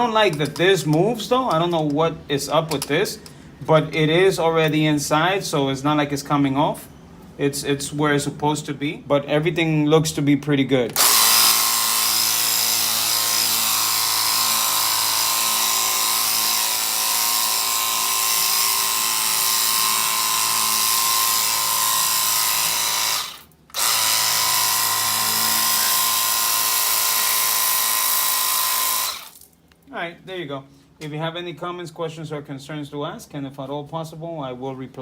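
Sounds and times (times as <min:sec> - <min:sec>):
pressure washer pump motor hissing: 0:11.0 - 0:29.4.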